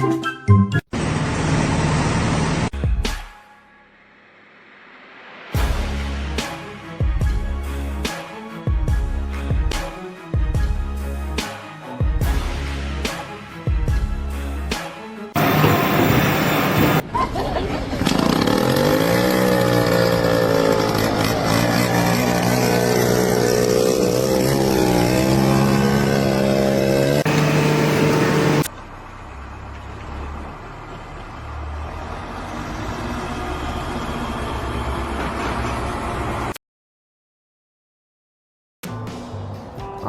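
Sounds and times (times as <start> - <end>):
engine revving: 15.4 - 17.0, 17.9 - 28.7
low engine rumble: 27.3 - 36.5.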